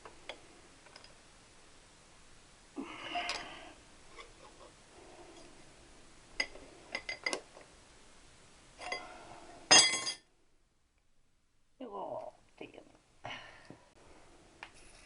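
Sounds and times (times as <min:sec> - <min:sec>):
metal tools clinking: 0:09.7 - 0:10.2.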